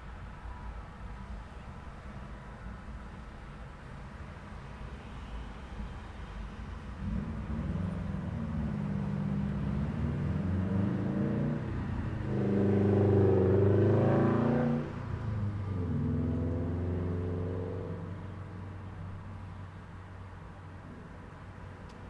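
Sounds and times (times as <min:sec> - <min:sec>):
vehicle engines accelerating: 0:06.8 - 0:19.3.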